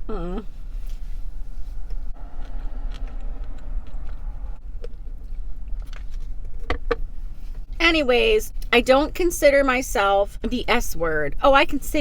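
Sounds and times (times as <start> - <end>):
car engine idling: 0.7 - 7.7.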